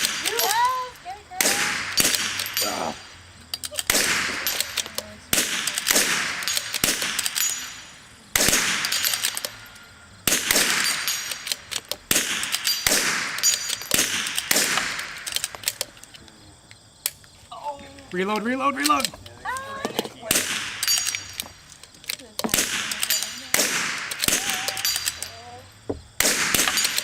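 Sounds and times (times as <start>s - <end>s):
rifle shots with echo: 0.0s - 0.5s, 1.4s - 2.9s, 3.8s - 9.6s, 10.2s - 15.8s, 20.3s - 21.4s, 22.4s - 25.2s, 26.2s - 27.0s
bullets striking steel: 1.4s - 16.0s, 20.3s - 21.7s, 22.3s - 25.4s, 26.2s - 27.0s.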